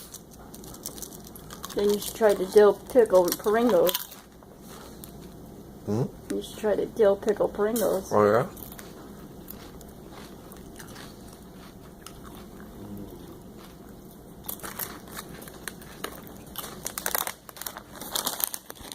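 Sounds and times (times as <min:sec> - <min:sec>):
potato chips being crunched: 0:00.0 - 0:04.3, 0:14.4 - 0:18.9.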